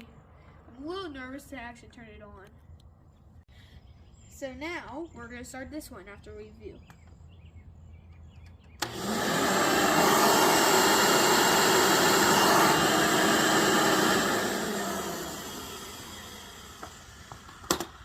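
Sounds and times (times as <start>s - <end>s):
vacuum cleaner motor running: 8.8s - 18.0s.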